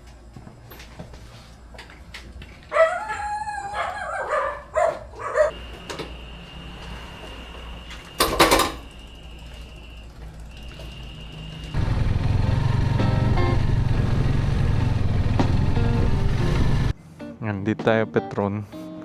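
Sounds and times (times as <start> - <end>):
animal calls: 2.7 - 5.6.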